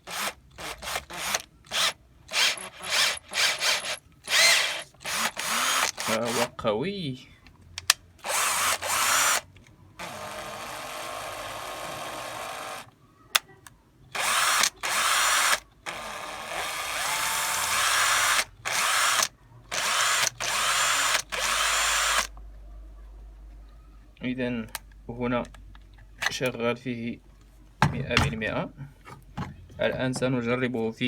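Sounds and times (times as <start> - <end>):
cordless screwdriver motor running: 0.1 - 6.5, 8.2 - 12.9, 14.2 - 22.3.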